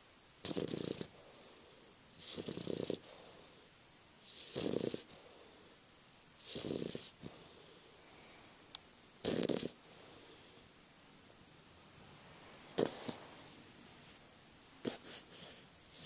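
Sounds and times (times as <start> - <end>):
puppy snoring: 0.4 - 5.8, 6.4 - 8.0, 9.2 - 10.6, 12.7 - 13.6, 14.8 - 16.0.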